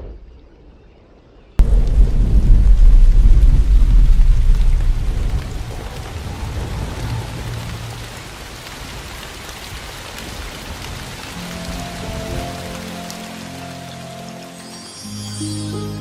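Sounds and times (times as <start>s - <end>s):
low thunder rumble: 1.6s - 12.6s
steady rain falling: 1.6s - 16.0s.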